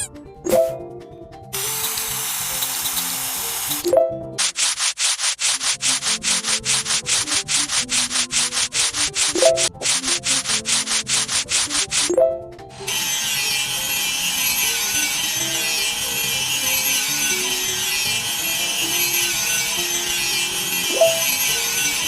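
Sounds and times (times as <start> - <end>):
sanding rusty metal: 4.4 - 12.1, 12.9 - 22.0.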